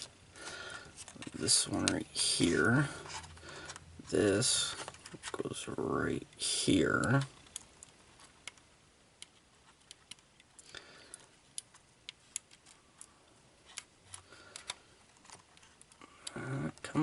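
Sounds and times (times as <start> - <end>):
plastic parts clicking: 7.0 - 17.0.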